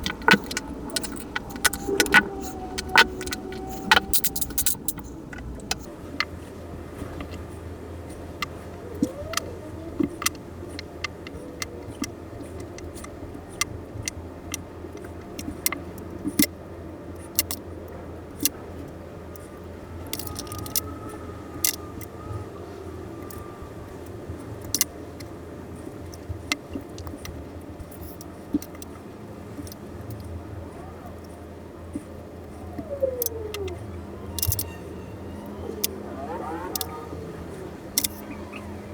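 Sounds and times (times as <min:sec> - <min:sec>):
metal watch parts clicking: 0:00.0 - 0:05.9, 0:20.1 - 0:22.1, 0:32.7 - 0:37.0, 0:37.9 - 0:38.7
steady low hum: 0:00.0 - 0:38.9.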